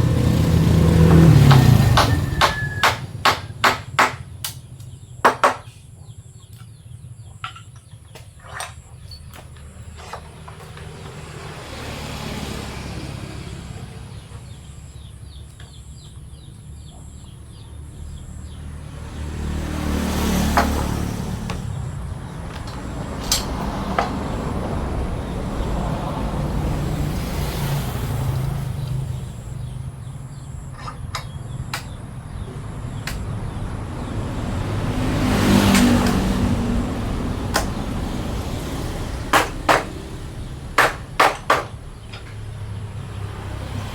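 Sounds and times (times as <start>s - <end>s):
vehicles passing by: 0.0s - 43.9s
sharp knocks: 0.8s - 5.8s, 20.2s - 25.3s, 37.4s - 42.6s.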